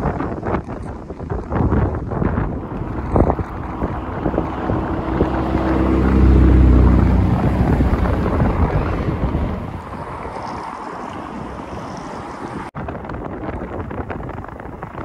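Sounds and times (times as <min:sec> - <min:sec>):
wind buffeting microphone: 0:00.0 - 0:15.0
motor vehicle passing: 0:02.4 - 0:12.7.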